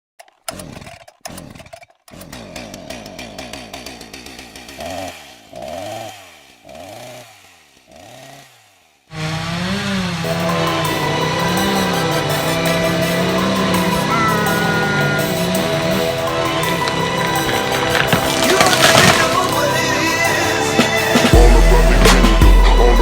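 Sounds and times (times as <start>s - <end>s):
chainsaw engine revving: 0.2s - 23.0s
music: 10.2s - 23.0s.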